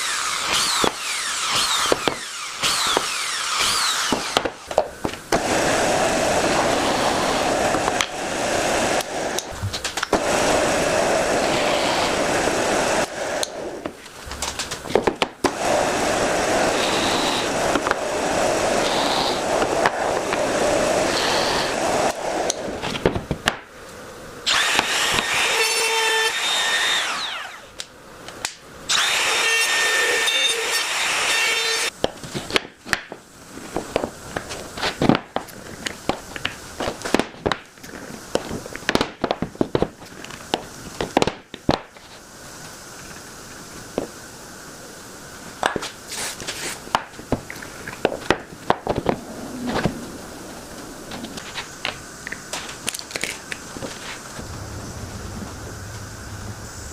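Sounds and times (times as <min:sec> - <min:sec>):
power tool running on wood: 0:00.0 - 0:09.5, 0:10.1 - 0:13.8, 0:15.4 - 0:22.6, 0:24.5 - 0:27.7, 0:28.9 - 0:31.9.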